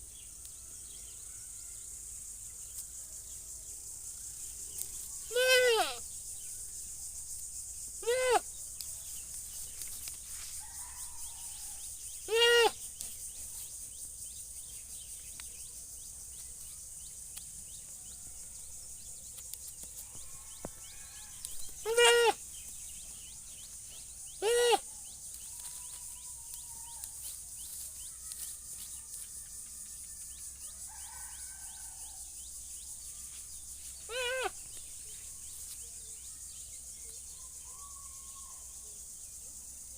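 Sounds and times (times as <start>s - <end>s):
goat bleating: 5.3s - 6.0s, 8.0s - 8.4s, 12.3s - 12.8s, 21.8s - 22.4s, 24.4s - 24.8s, 34.1s - 34.6s.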